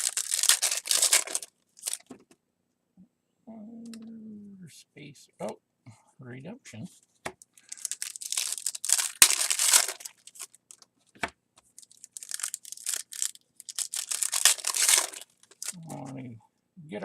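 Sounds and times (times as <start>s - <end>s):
foil wrapper crinkling and tearing: 0.0s - 2.1s, 7.6s - 10.9s, 11.7s - 15.8s.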